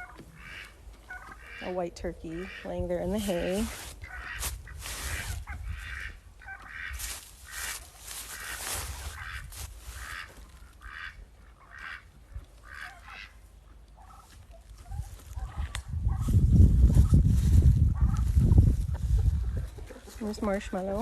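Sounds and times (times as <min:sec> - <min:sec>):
poultry calling: 0:00.0 - 0:16.3.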